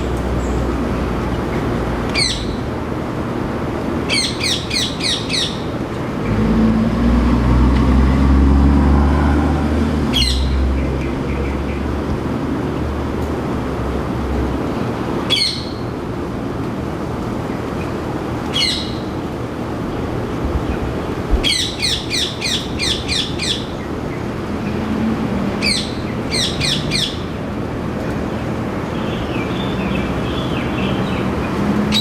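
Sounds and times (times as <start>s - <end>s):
parakeet shrill squawks: 18.5s - 19.0s, 21.4s - 23.6s.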